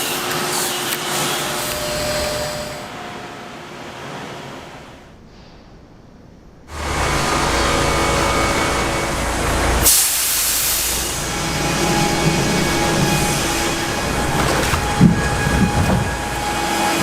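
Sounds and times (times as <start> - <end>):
loud low machine noise: 0.0 - 17.0
wood-processing machinery din: 6.7 - 17.0.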